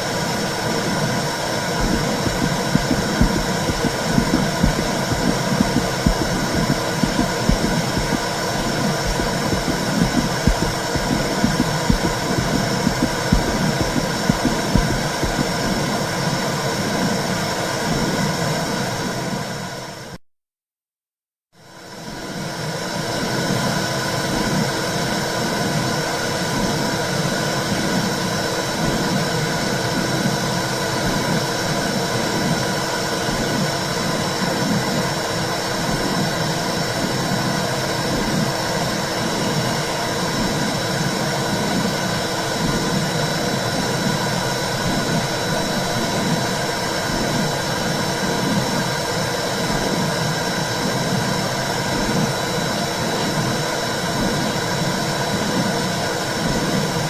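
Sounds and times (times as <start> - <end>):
heartbeat-like pulse: 0.4 - 18.3, 35.9 - 57.0
whooshing womb rumble: 1.7 - 16.0.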